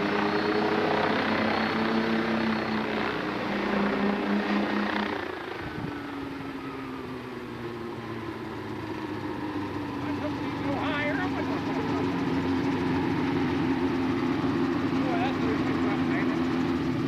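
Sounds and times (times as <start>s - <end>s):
helicopter engine and rotor drone: 0.0s - 17.0s.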